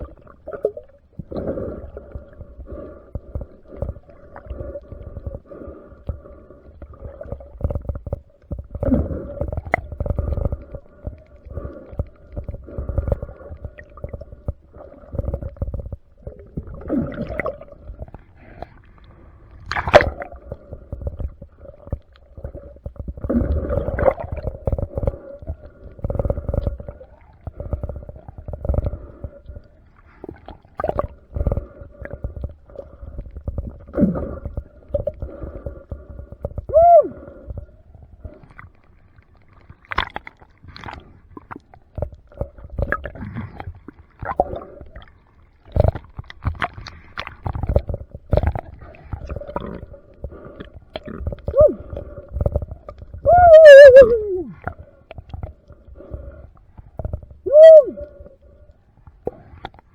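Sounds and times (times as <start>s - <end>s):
underwater rumbling water surges: 47.4s - 55.0s, 57.0s - 58.2s.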